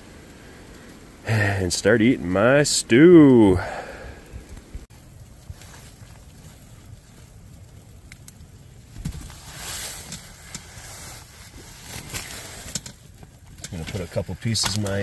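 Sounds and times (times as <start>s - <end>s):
short rustle: 8.9s - 15.0s.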